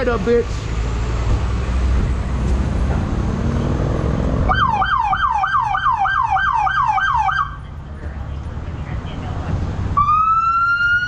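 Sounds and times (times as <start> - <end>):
traffic noise: 0.0 - 11.0
police siren yelp: 4.5 - 7.6, 10.0 - 11.0.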